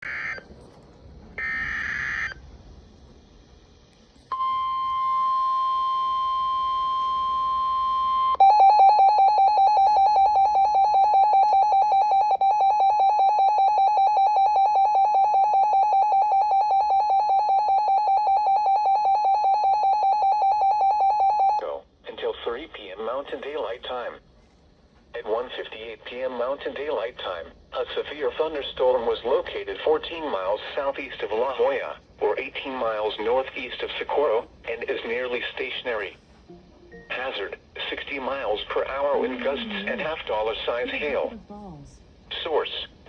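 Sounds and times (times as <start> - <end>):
screechy data burst: 0.0 - 0.5, 1.4 - 2.4
steady alert tone: 36.5 - 37.5.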